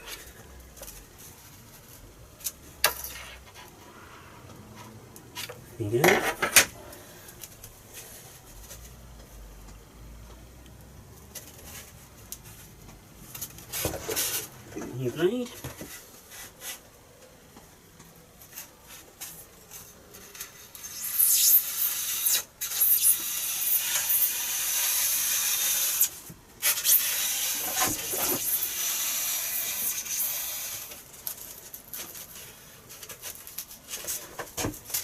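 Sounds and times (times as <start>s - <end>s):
blade cutting foam board: 20.8s - 31.0s.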